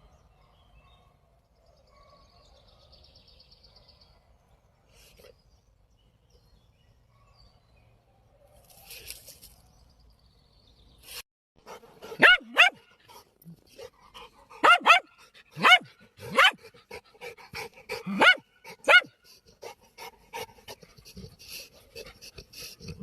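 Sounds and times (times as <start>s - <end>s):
dog barking: 1.8s - 2.9s, 12.1s - 12.9s, 14.6s - 16.7s, 18.0s - 19.2s.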